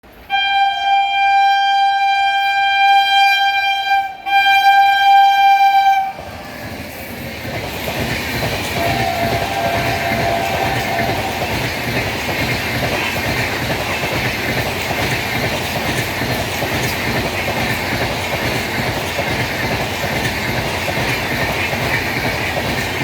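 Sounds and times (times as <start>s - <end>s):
train running past: 0.0s - 23.0s
locomotive horn: 0.2s - 6.8s, 8.8s - 11.6s.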